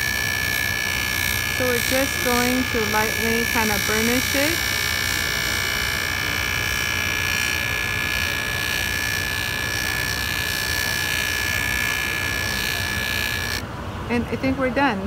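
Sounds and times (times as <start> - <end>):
rotary tool whining: 0.0 - 13.6.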